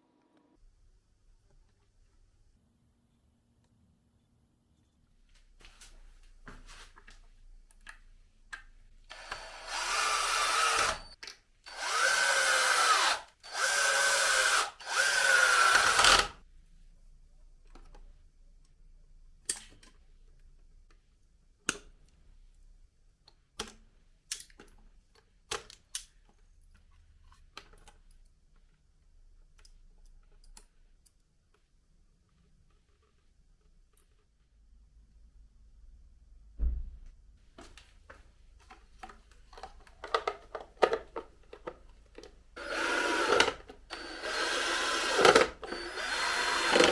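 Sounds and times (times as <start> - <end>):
power drill motor whirring: 9.1 - 16.4, 42.6 - 46.9.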